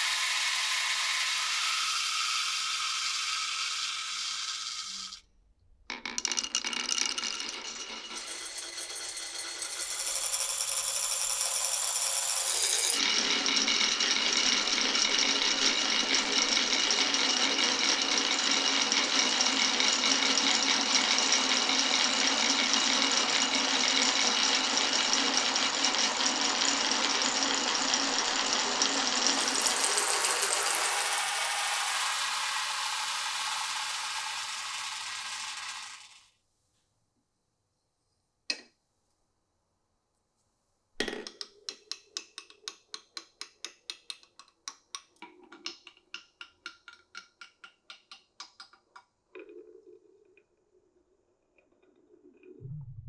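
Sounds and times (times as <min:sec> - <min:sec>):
marbles rolling down tracks: 0:00.0 - 0:05.2, 0:05.9 - 0:36.3.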